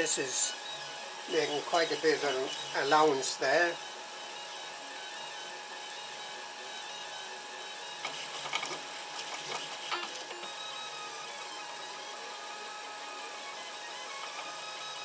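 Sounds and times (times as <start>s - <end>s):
stepper motors whining: 0.0s - 15.0s.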